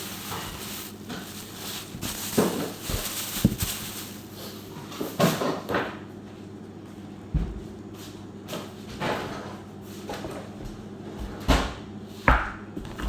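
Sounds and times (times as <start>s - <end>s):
kitchen items knocking and clattering: 0.0s - 6.0s.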